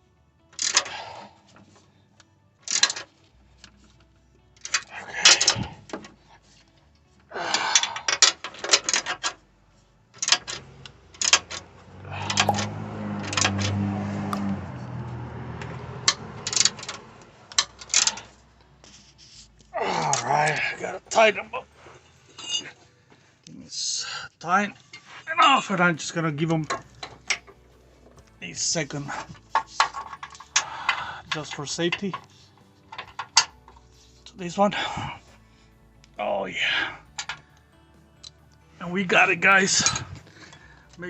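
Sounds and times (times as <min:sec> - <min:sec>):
low hum: 0:10.8 - 0:19.0.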